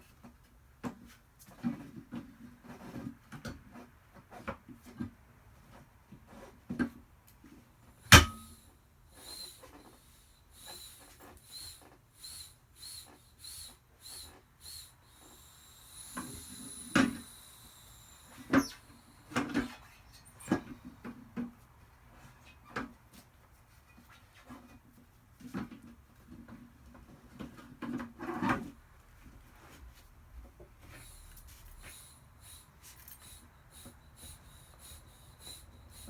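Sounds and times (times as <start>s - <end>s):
bead breaker knocking on tire rim: 8.1s - 8.6s.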